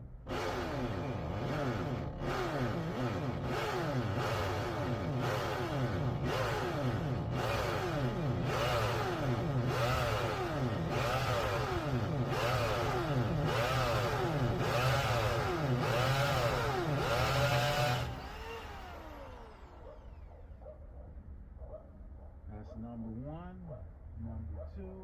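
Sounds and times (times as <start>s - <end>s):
hammer drill boring into concrete: 0.3s - 19.8s.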